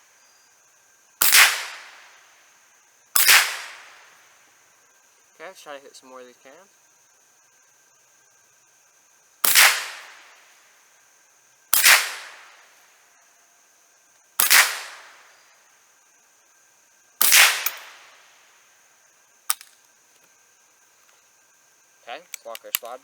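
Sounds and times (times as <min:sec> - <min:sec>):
high insect drone: 0:00.0 - 0:23.0
rifle shots echoing: 0:01.2 - 0:02.2, 0:03.2 - 0:04.2, 0:09.4 - 0:10.4, 0:11.8 - 0:12.7, 0:14.4 - 0:15.3, 0:17.2 - 0:18.2.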